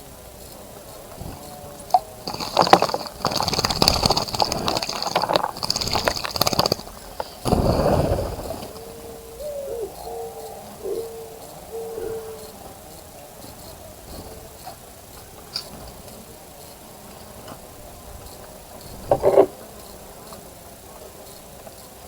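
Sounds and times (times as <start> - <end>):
dove cooing: 0.2 - 15.1
bird splashing water: 1.9 - 8.8.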